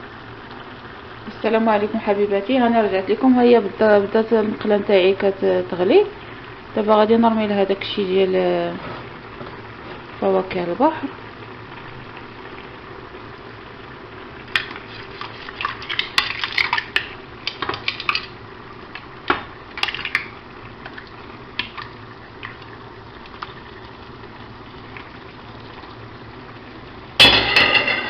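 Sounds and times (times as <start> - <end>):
broth boiling in pan: 0.0 - 28.0
seafood clinking into pan: 27.2 - 28.0
utensil tapping pan: 27.2 - 28.0.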